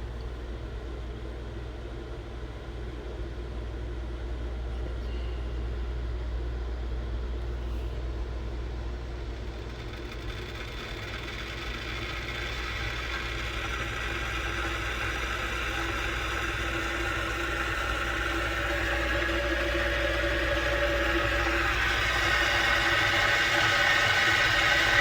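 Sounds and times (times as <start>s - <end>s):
low steady hum: 0.0s - 25.0s
kettle water hissing rumble: 8.8s - 25.0s.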